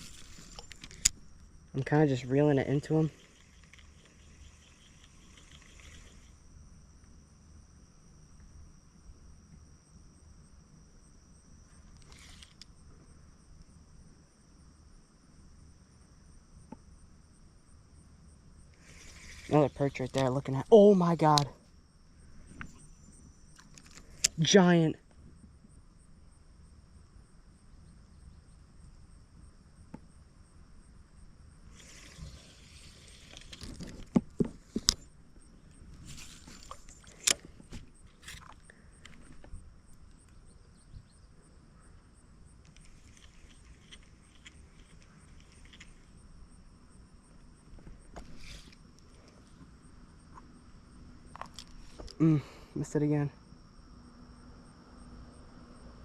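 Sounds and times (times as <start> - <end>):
crickets chirping: 0.0 - 56.0
insects trilling: 0.0 - 56.0.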